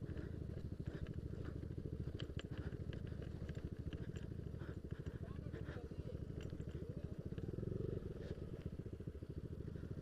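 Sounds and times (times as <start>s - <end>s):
light clicks and rattles: 0.0s - 7.5s
scooter engine running: 0.0s - 10.0s.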